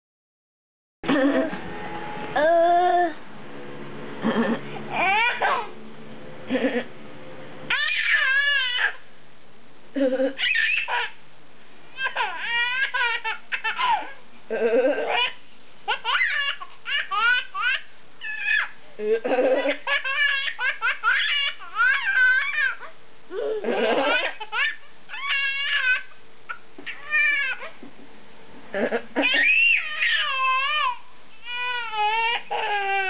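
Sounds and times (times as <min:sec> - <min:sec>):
child laughing and giggling: 0:10.0 - 0:11.2, 0:12.0 - 0:26.1, 0:28.8 - 0:33.0.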